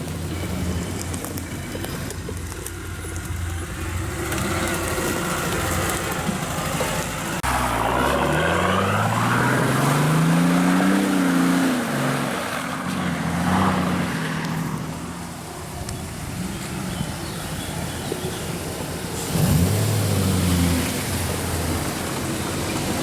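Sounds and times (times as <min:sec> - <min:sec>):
off-road vehicle engine revving: 0:00.0 - 0:23.0.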